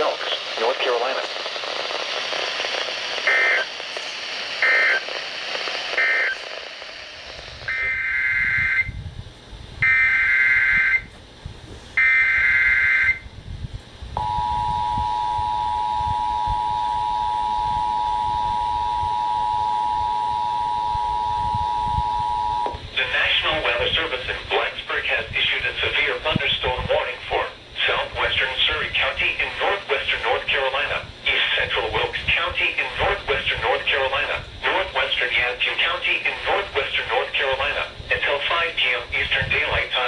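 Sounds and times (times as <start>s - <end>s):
warbling two-tone data bursts: 2.9s - 5.2s, 5.8s - 8.9s
steady two-tone attention signal: 7.6s - 9.0s, 14.2s - 22.8s.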